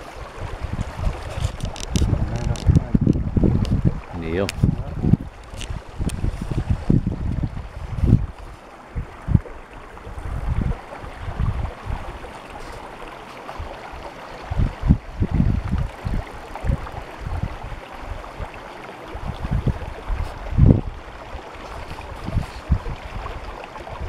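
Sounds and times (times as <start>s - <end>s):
river water rushing: 0.0s - 24.0s
wind gusts on microphone: 0.0s - 24.0s.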